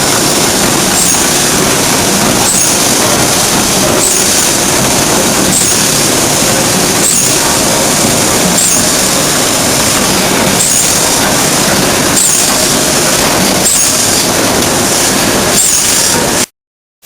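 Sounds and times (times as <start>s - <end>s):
mill mechanical rumble and grinding: 0.0s - 16.5s
high metal on metal squeal: 0.1s - 1.4s, 2.4s - 3.0s, 3.9s - 4.7s, 5.4s - 6.1s, 7.0s - 7.9s, 8.5s - 11.3s, 12.0s - 12.8s, 13.6s - 14.3s, 14.9s - 16.2s.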